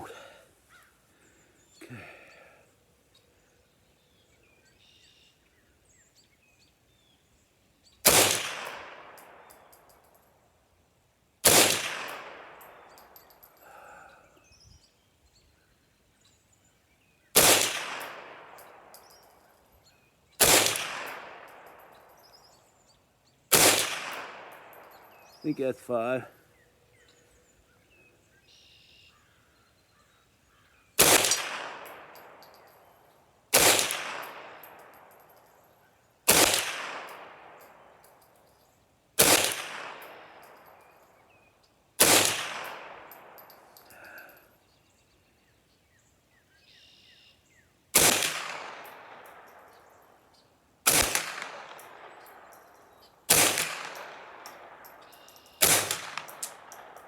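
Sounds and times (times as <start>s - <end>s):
rifle shots echoing: 8.0s - 9.8s, 11.4s - 13.2s, 17.4s - 19.1s, 20.4s - 22.1s, 23.5s - 25.3s, 31.0s - 32.9s, 33.5s - 35.3s, 36.3s - 38.0s, 39.2s - 40.9s, 42.0s - 43.8s, 48.0s - 49.9s, 50.8s - 57.0s.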